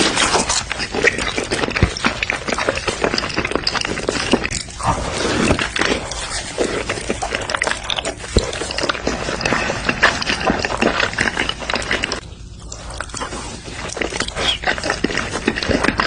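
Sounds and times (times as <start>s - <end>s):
wet chewing and biting: 0.0s - 16.0s.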